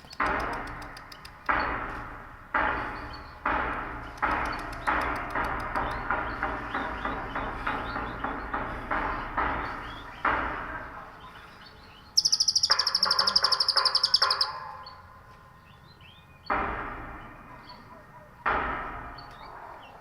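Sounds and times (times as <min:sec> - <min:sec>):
loud sharp sounds: 0:00.0 - 0:14.9
bird high trill: 0:12.2 - 0:15.0.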